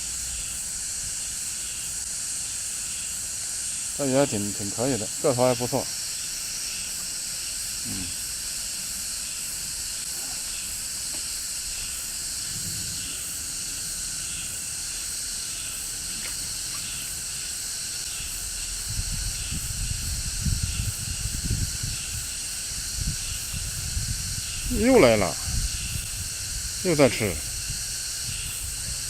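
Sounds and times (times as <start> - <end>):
high-pitched pulsing outdoor hiss: 0.0 - 29.0
low rumbling gusts: 11.6 - 16.1, 18.3 - 29.0.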